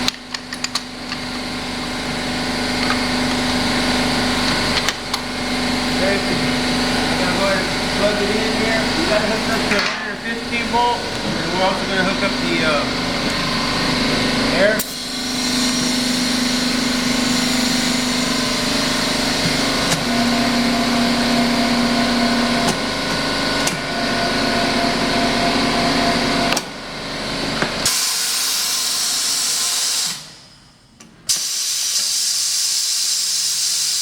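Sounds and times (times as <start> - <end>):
electric motor humming: 0.8 - 27.9
compressed air hissing: 3.1 - 19.4, 27.8 - 30.5, 31.3 - 34.0.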